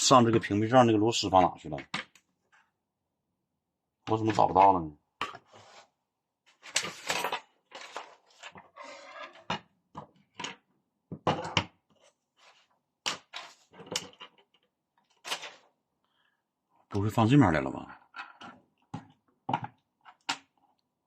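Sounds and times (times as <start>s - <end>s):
tools rummaged on a workbench: 6.5s - 15.7s.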